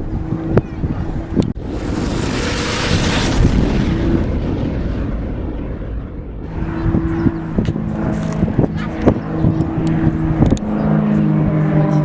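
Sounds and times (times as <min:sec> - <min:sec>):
high whine falling in pitch: 0:01.6 - 0:07.1
aircraft engine rushing: 0:01.6 - 0:10.9.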